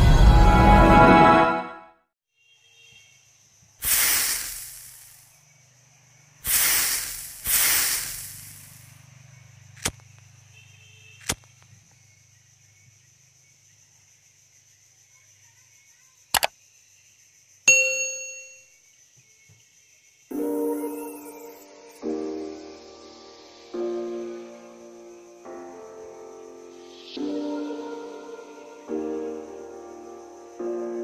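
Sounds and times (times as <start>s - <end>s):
sharp clicks: 9.8s - 10.3s, 11.2s - 11.7s, 16.4s - 16.6s
ringing ding: 17.7s - 18.7s.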